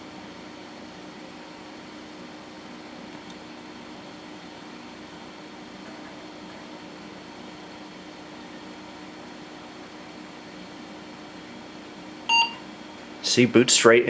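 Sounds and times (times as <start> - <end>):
fan hum: 0.0 - 14.0
computer speaker beep: 12.3 - 12.6.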